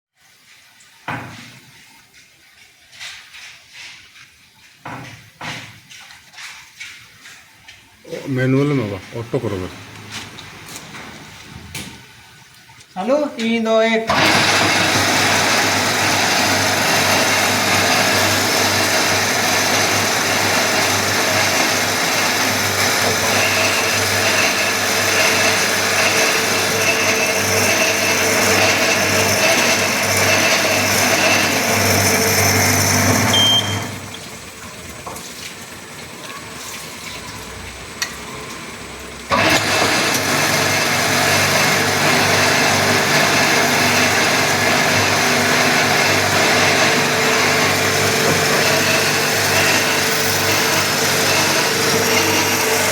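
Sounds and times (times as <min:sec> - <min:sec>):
drilling machine motor hum: 0:14.1 - 0:34.0, 0:39.3 - 0:52.9.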